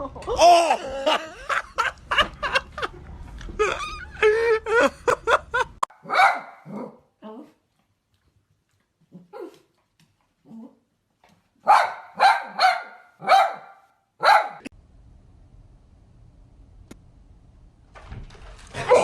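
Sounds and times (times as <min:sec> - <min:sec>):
dog barking: 0:05.9 - 0:07.1, 0:11.6 - 0:14.7
steady low hum: 0:14.7 - 0:18.0.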